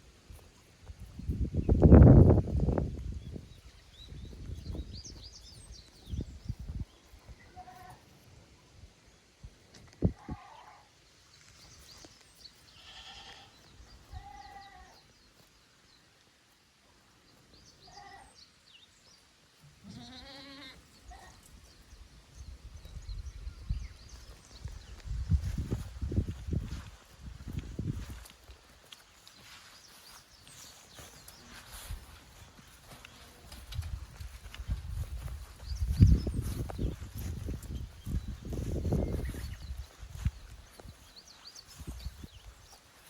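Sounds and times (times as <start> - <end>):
wind rumble on microphone: 0.9 - 7.0, 21.9 - 28.3, 33.5 - 41.1, 41.7 - 42.8
goats bleating: 12.8 - 13.6, 14.2 - 15.0, 19.8 - 21.4.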